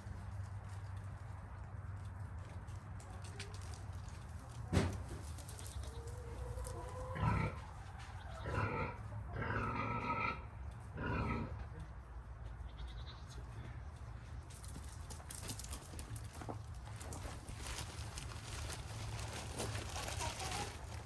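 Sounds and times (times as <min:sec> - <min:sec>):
goats bleating: 0:12.6 - 0:13.4.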